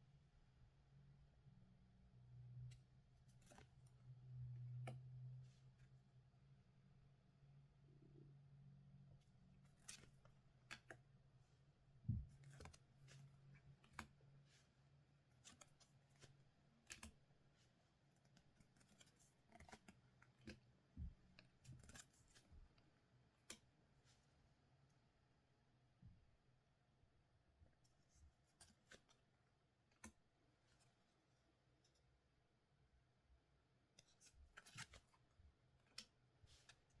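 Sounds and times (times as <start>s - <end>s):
card packs clicking and crinkling: 18.2s - 20.6s.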